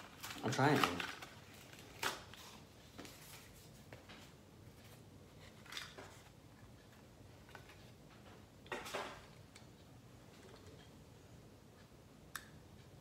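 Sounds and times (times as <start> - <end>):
packaging rustle: 0.0 - 3.6.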